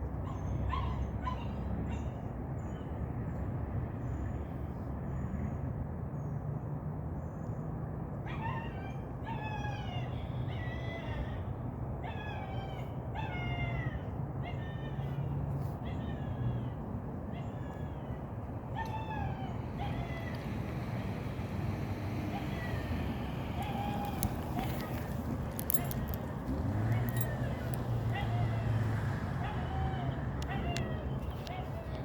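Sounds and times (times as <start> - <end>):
puppy whining and yelping: 0.2 - 2.2, 8.2 - 28.8, 29.4 - 32.0.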